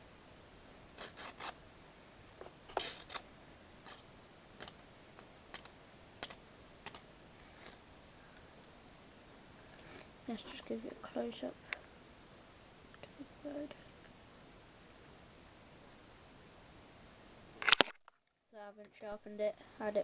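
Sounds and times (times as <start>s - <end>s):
pocketknife slicing through material: 1.0s - 1.6s.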